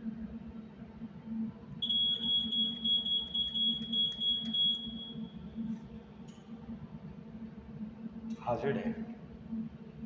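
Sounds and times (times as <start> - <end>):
electronic horn long beep: 1.8 - 5.3.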